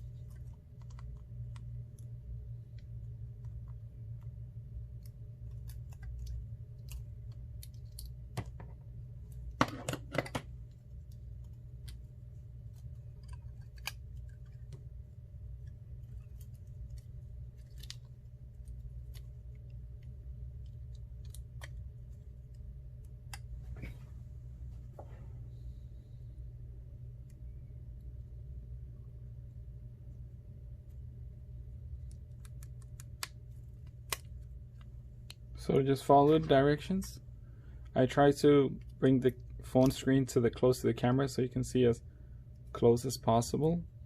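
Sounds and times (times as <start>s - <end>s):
steady low hum: 0.0s - 44.0s.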